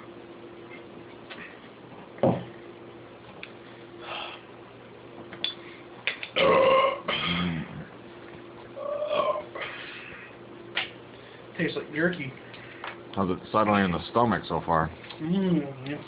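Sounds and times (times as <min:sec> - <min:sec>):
man burping loudly: 0:06.4 - 0:07.9.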